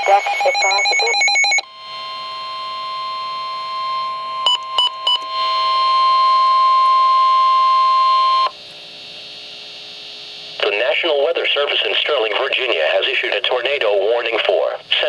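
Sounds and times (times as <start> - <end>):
faint radio hiss: 10.0 - 15.0.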